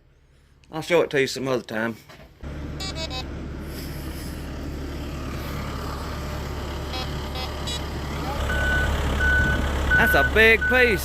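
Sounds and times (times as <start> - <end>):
engine droning: 2.4 - 11.0.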